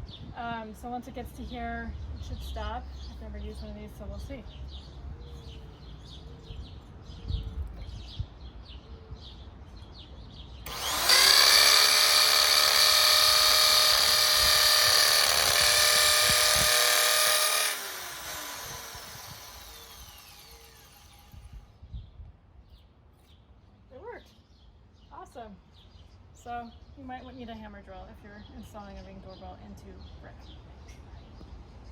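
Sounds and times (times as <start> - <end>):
hammer drill boring into brick: 10.7 - 21.7.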